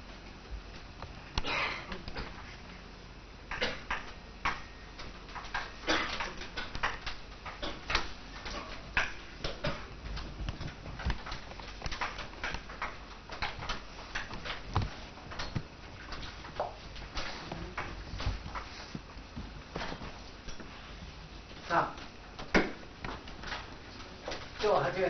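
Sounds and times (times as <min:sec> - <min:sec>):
small clicks and taps: 0:03.5 - 0:20.7.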